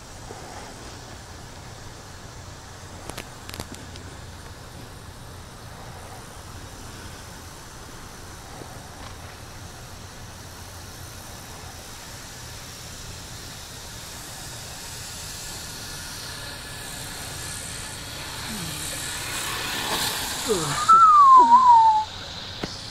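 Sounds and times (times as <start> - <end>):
radio-control helicopter rotor whir: 14.0 - 22.6.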